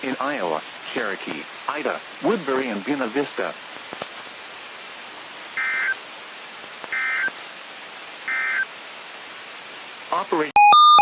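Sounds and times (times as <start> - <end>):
static hiss: 0.0 - 11.0
warbling digital data tones: 10.6 - 11.0.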